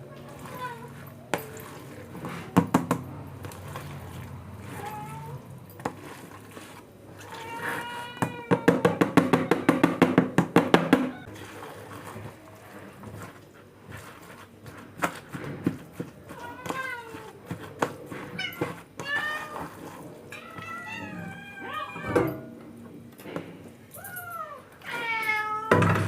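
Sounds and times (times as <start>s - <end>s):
cats meowing: 0.0s - 1.1s, 4.5s - 5.6s, 7.1s - 10.0s, 16.3s - 17.5s, 18.2s - 22.6s, 24.0s - 26.0s.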